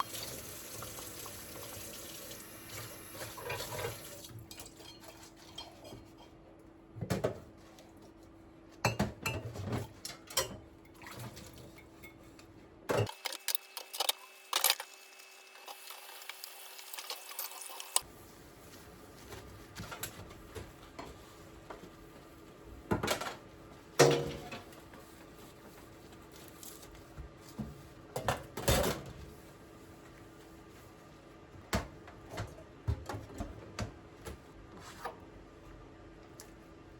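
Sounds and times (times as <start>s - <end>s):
water running: 0.0s - 4.4s.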